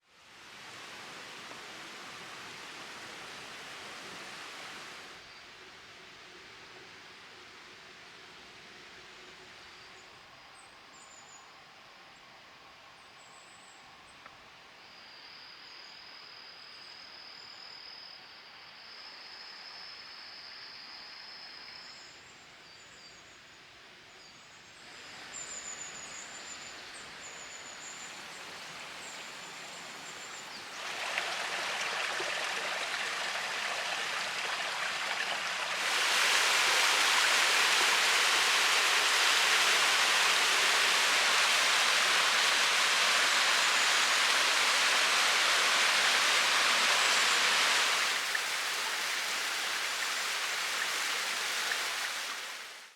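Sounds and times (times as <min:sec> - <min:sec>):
waterfall and stream rushing: 0:00.2 - 0:05.2, 0:24.9 - 0:52.9.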